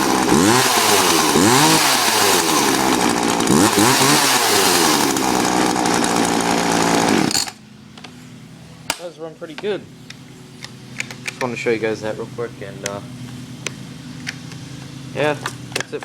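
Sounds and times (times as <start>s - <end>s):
chainsaw engine revving: 0.0s - 7.6s.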